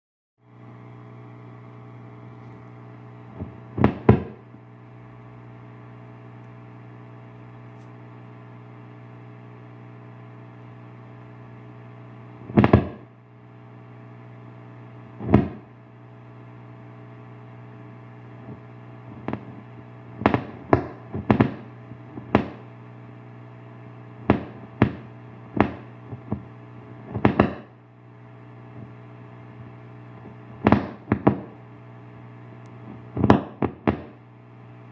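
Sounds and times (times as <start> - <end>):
guitar amplifier humming: 0.4 - 34.9
loud sharp pops: 3.3 - 4.5, 12.4 - 13.1, 15.2 - 15.7, 18.4 - 22.7, 24.2 - 27.8, 29.6 - 31.6, 32.8 - 34.2.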